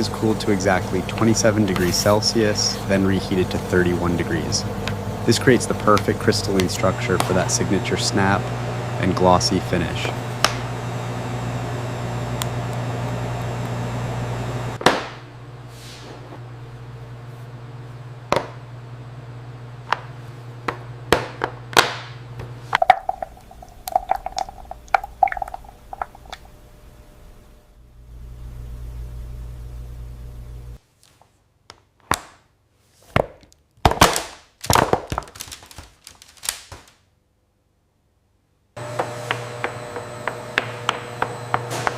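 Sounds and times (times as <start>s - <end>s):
factory machinery humming: 0.0s - 14.8s, 38.8s - 41.9s.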